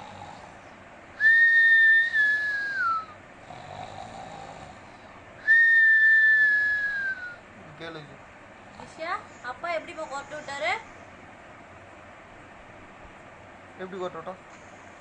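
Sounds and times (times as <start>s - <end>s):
baby snoring with nasal whistle: 1.2s - 4.8s.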